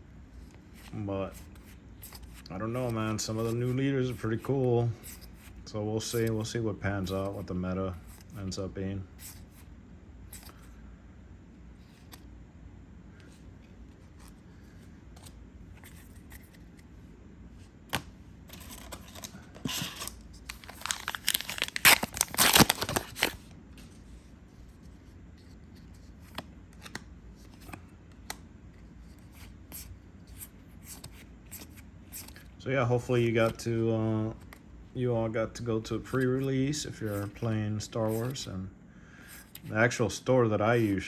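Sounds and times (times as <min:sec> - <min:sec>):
foil pack ripping and crinkling: 0:18.5 - 0:23.5.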